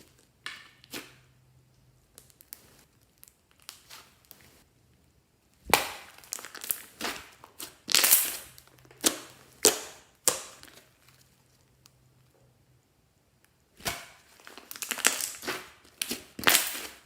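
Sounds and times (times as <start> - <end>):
crackling crunches by hand: 13.8 - 17.0.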